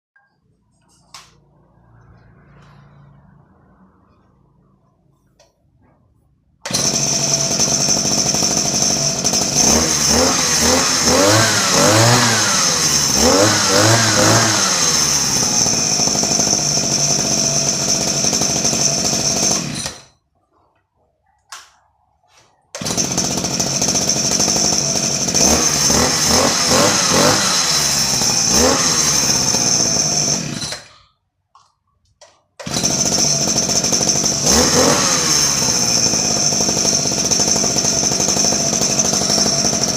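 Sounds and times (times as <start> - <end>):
brush cutter engine revving: 6.6 - 20.1, 22.8 - 31.0, 32.6 - 39.9.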